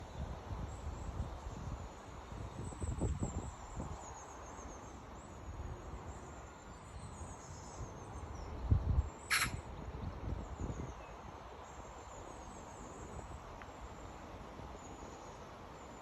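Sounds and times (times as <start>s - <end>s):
wind rumble on microphone: 0.0s - 4.2s, 7.0s - 11.5s
high repeated chirping: 9.3s - 9.6s
sharp bird call: 9.3s - 9.6s.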